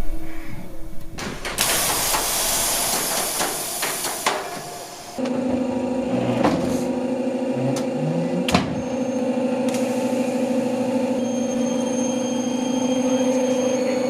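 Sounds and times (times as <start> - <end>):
machine motor humming: 4.6 - 11.4.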